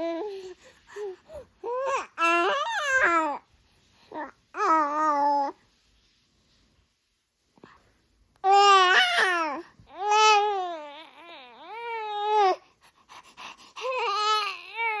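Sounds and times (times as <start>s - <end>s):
baby babbling: 1.0s - 3.4s, 4.1s - 5.6s, 8.4s - 12.6s, 13.8s - 15.0s.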